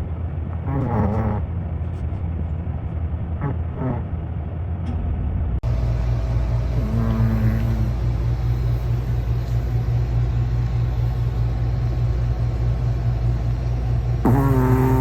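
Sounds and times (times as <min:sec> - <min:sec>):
pet snoring: 0:00.6 - 0:01.5, 0:03.4 - 0:04.1, 0:06.8 - 0:09.1, 0:14.2 - 0:15.0
whine-like tone: 0:05.7 - 0:15.0.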